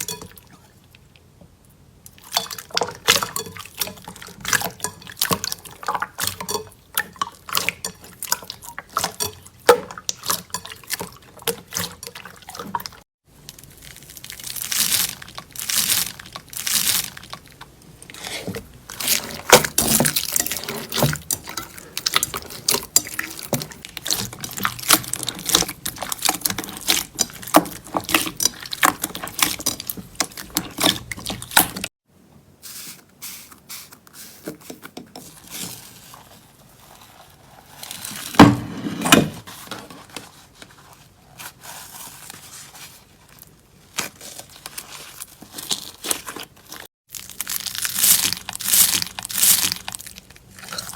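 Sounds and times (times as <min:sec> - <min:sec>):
slime squelching: 0:02.1 - 0:31.9, 0:41.4 - 0:50.9.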